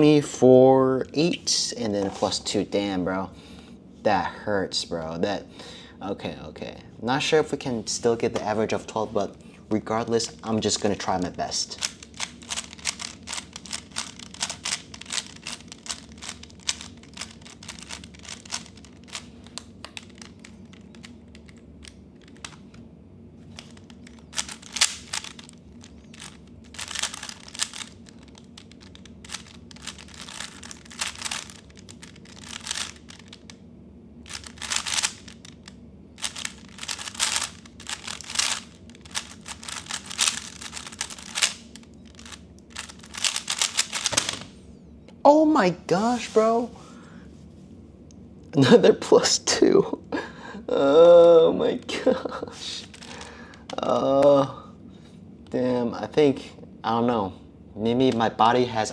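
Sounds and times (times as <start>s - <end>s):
faint steady hum: 0.0s - 58.9s
puzzle cube clicking: 10.4s - 22.8s, 23.5s - 33.6s, 34.3s - 44.5s.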